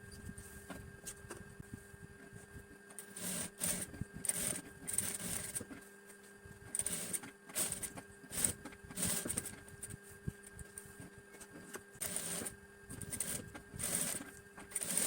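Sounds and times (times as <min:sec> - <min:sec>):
faint steady hum: 0:00.0 - 0:15.0
sewing machine stitching fabric: 0:03.0 - 0:05.7, 0:06.7 - 0:09.7, 0:12.0 - 0:15.0.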